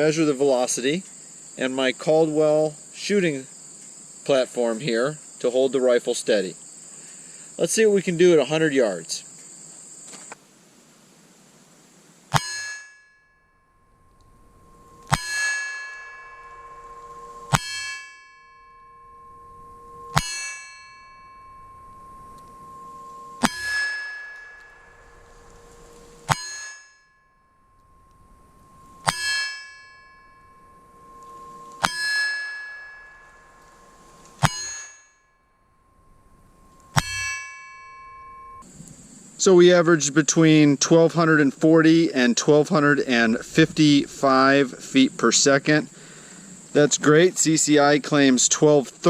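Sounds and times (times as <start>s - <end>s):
metallic ring: 12.3s - 38.8s.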